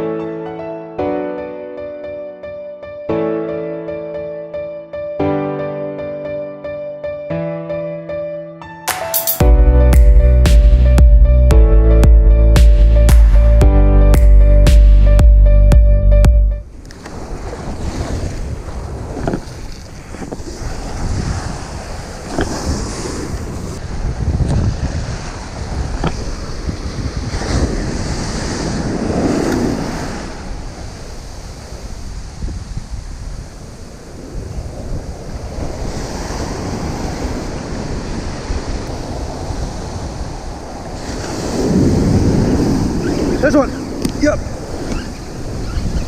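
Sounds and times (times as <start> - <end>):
ocean surf breaking: 16.6 - 46.0
wind buffeting microphone: 16.6 - 46.0.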